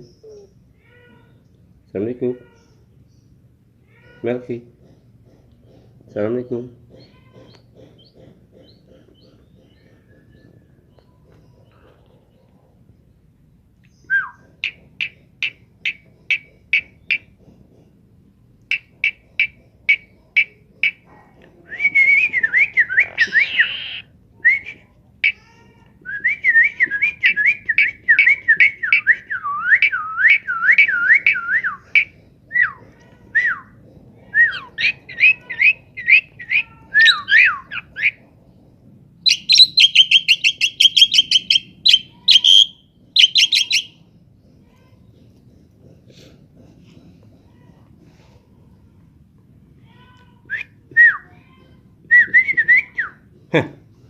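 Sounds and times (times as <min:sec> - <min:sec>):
bird chattering: 0:04.7 - 0:11.8, 0:13.9 - 0:17.6, 0:18.7 - 0:21.1, 0:22.6 - 0:24.1, 0:27.2 - 0:32.9, 0:34.4 - 0:38.6, 0:39.2 - 0:44.1
pet bird whistling and calling: 0:21.7 - 0:25.4, 0:26.1 - 0:32.8, 0:33.4 - 0:38.2, 0:39.2 - 0:44.0.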